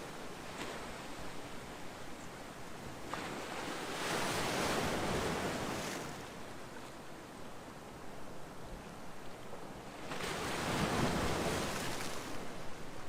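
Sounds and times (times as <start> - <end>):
ocean waves on shore: 2.8 - 8.0, 9.6 - 13.0.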